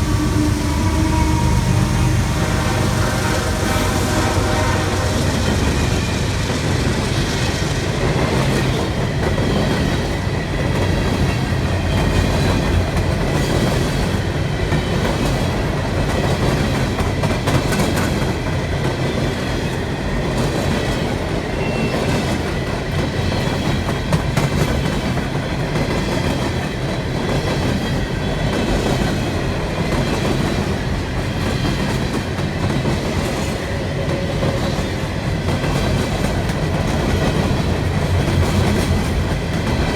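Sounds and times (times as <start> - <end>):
freight train heavy rumble: 0.0 - 39.9.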